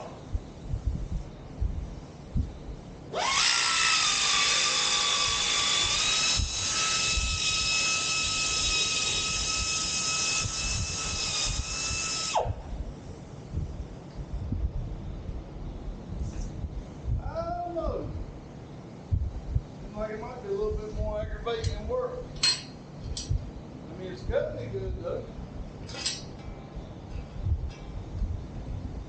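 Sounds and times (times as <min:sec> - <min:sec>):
electric power tool whining: 0:03.1 - 0:12.6.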